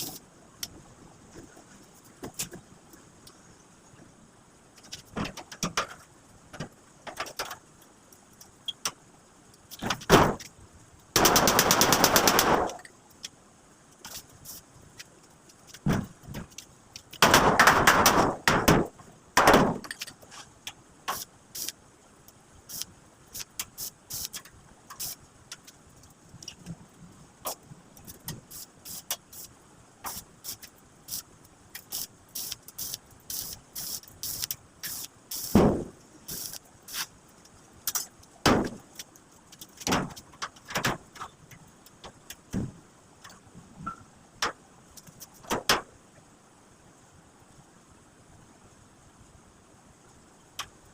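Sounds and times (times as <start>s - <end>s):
arc welding crackling: 0.0s - 0.8s, 4.8s - 42.6s.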